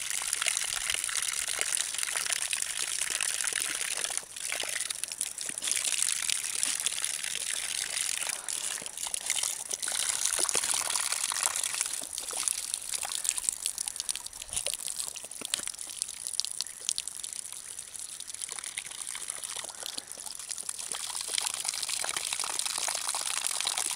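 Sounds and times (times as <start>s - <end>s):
sharp water splashes: 0.0s - 17.6s
water pouring over waterfall: 0.0s - 23.9s.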